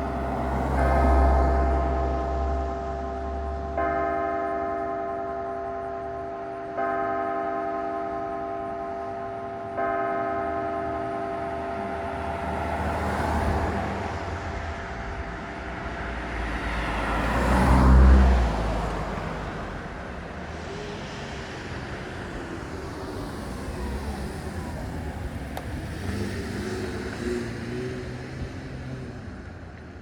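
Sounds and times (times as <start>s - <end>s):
vehicle driving past: 0.0s - 2.7s, 11.4s - 29.8s
church bell ringing: 0.0s - 16.0s.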